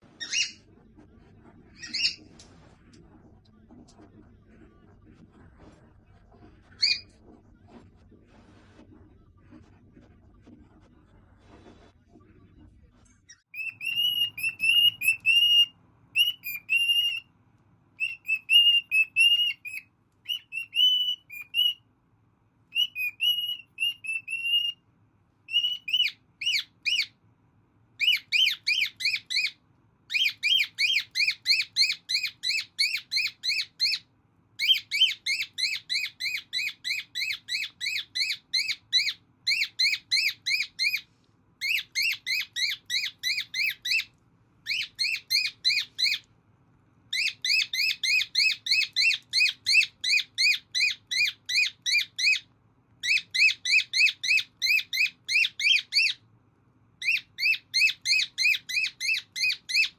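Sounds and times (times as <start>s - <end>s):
cockatiel whistling: 0.2s - 0.7s, 1.7s - 2.3s, 13.3s - 17.3s, 18.0s - 21.8s, 22.7s - 24.8s, 25.5s - 27.2s, 28.0s - 46.2s, 47.1s - 56.2s, 57.0s - 59.9s.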